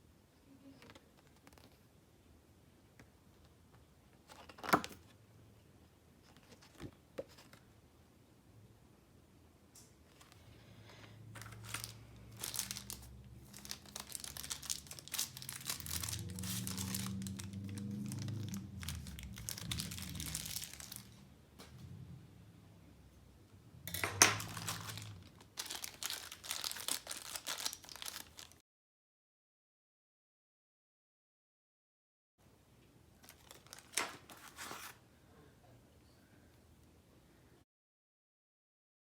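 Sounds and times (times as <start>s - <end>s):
packaging crinkling and tearing: 11.3s - 21.2s, 23.9s - 28.6s, 33.2s - 35.0s.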